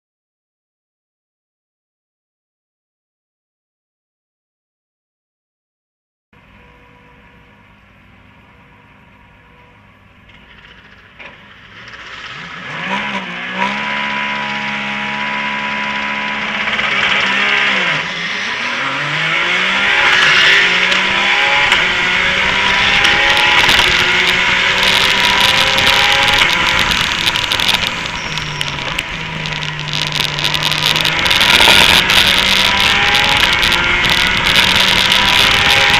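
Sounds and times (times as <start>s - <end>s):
race car engine revving: 10.4s - 35.9s
loud rushing noise: 11.5s - 35.9s.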